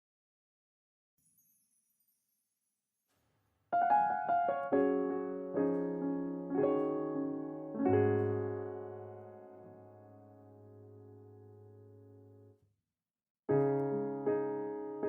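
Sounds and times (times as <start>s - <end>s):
piano music: 3.8s - 12.5s, 13.5s - 15.0s.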